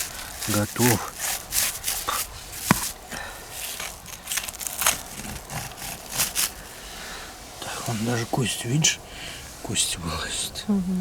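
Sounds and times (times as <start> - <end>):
fish being torn apart by hand: 0.0 - 6.8.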